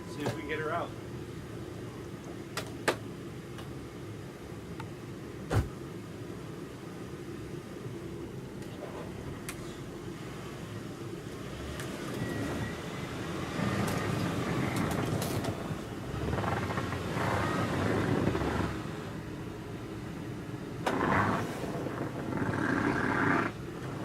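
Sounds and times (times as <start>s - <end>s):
car engine revving: 11.4s - 19.3s, 20.8s - 24.0s.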